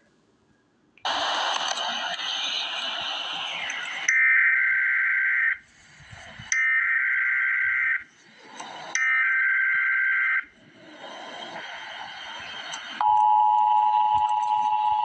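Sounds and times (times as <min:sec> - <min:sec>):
two-tone digital data bursts: 0:02.2 - 0:15.0.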